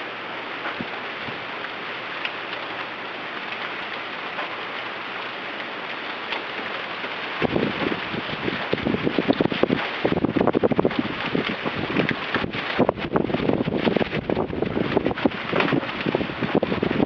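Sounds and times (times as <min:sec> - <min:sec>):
wind-driven rain hissing: 0:00.0 - 0:17.0
raindrop ticks: 0:00.6 - 0:17.0
wind buffeting microphone: 0:06.4 - 0:17.0.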